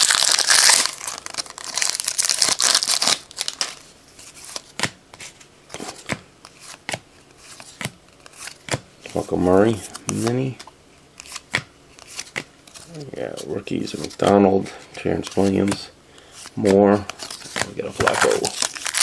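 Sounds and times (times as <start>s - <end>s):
foil wrapper crinkling and tearing: 0.0s - 3.8s, 17.2s - 19.0s
cards flipping clicks: 9.9s - 12.9s.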